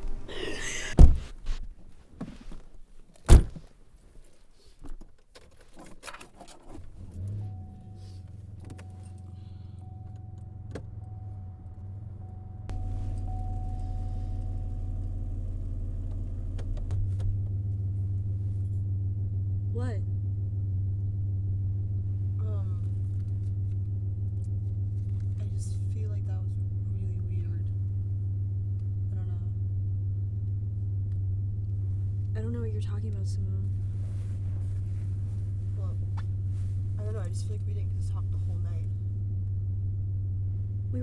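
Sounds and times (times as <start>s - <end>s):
car engine idling: 0.0s - 1.6s, 6.7s - 41.0s
car doors shutting: 0.0s - 2.6s, 3.2s - 3.7s, 6.0s - 17.9s
thin steady chime tone: 7.5s - 15.4s.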